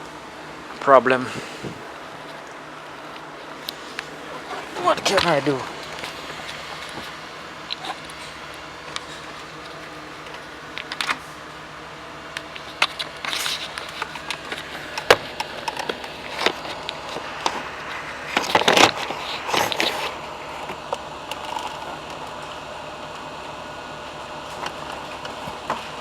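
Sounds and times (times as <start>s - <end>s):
steady low hum: 0.0s - 26.0s
hard parts clicking and clattering: 12.4s - 22.5s.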